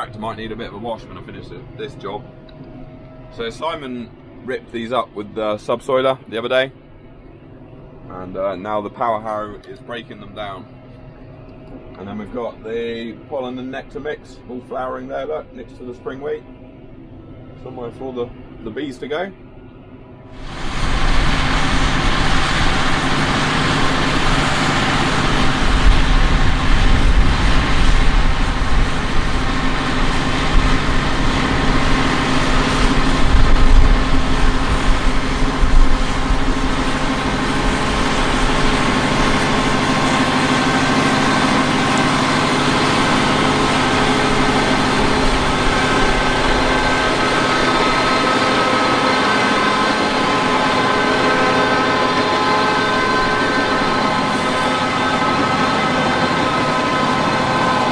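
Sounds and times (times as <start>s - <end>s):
tractor diesel engine under load: 20.4s - 57.9s.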